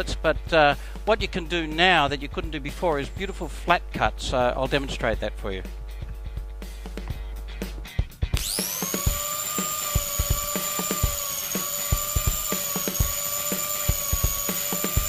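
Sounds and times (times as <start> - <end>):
grinder whine: 8.4 - 15.0
plane blade cutting wood: 8.4 - 15.0.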